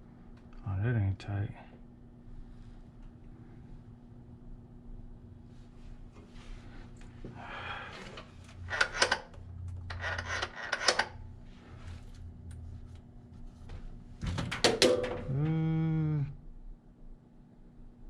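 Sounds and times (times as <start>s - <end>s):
steady low hum: 0.0s - 18.0s
tools clattering and scraping: 7.9s - 9.2s, 9.9s - 11.2s.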